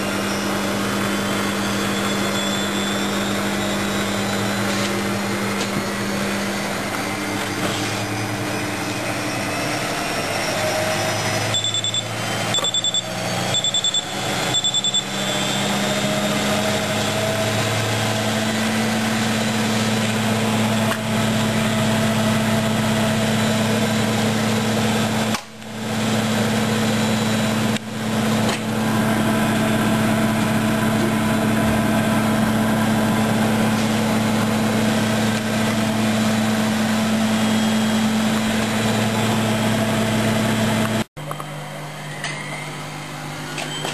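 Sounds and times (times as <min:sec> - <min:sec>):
short high electronic beeps: 0:11.5 - 0:15.6
washing machine motor hum: 0:15.8 - 0:43.9.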